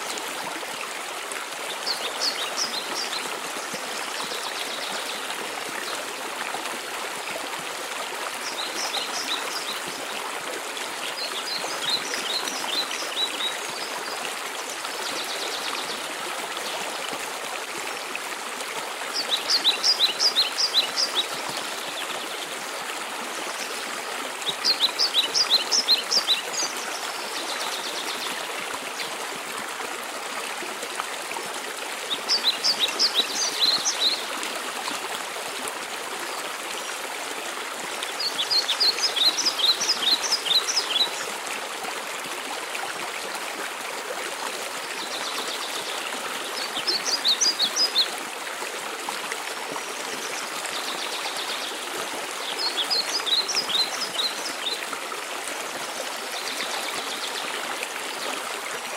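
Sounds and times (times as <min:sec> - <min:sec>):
songbird singing: 0:19.2 - 0:22.4, 0:24.4 - 0:28.4, 0:38.1 - 0:41.2.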